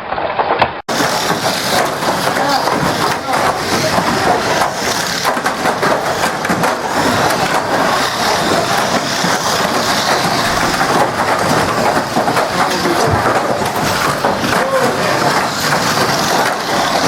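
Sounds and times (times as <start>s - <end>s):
hiss of running cars: 0.9s - 17.0s
model cars clattering: 0.9s - 17.0s.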